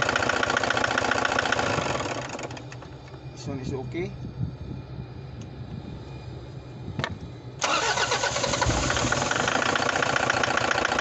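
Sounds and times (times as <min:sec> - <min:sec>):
engine clatter: 0:00.0 - 0:03.2, 0:07.6 - 0:11.0
diesel engine running: 0:00.0 - 0:11.0.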